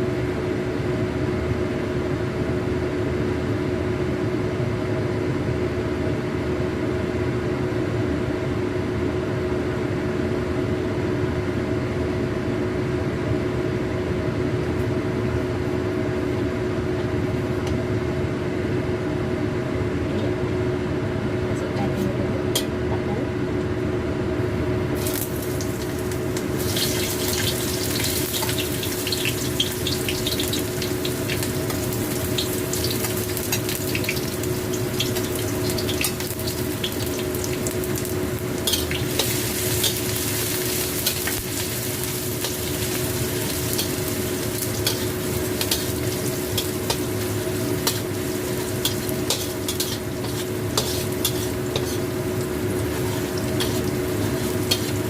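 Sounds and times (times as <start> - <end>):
steady low hum: 0.0 - 55.0
oil sizzling in a pan: 25.0 - 55.0
spatula scraping pan: 43.7 - 55.0.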